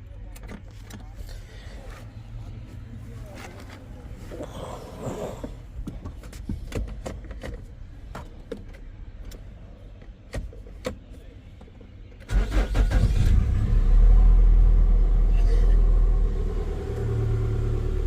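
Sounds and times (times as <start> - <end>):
car engine starting and running: 12.0 - 18.0.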